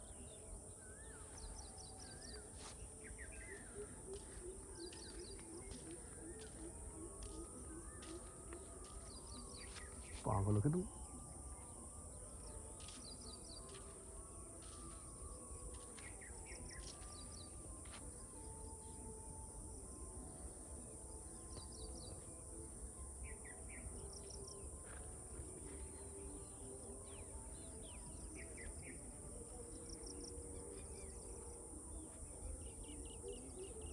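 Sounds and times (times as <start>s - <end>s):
birds chirping and trilling: 0.0s - 24.8s.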